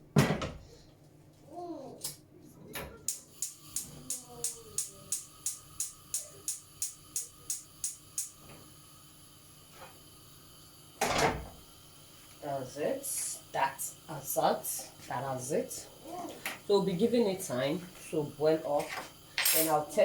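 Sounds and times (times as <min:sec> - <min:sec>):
gas burner igniter clicking: 0:03.1 - 0:08.6.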